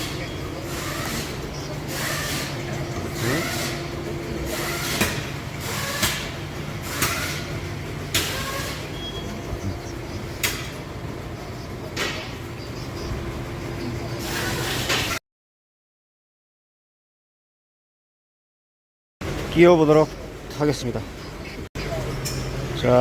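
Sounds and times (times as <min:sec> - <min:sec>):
hose squeaking: 0:00.0 - 0:03.9, 0:04.5 - 0:06.2, 0:06.8 - 0:09.8
low shop hum: 0:00.0 - 0:15.2, 0:19.2 - 0:23.0.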